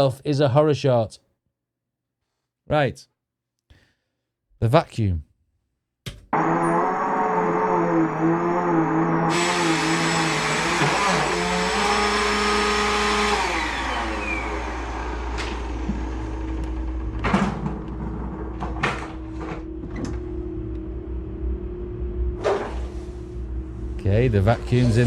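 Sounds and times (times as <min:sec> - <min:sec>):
motor winding down whine: 0:06.4 - 0:22.4, 0:23.3 - 0:25.0
vacuum cleaner running: 0:06.4 - 0:25.0.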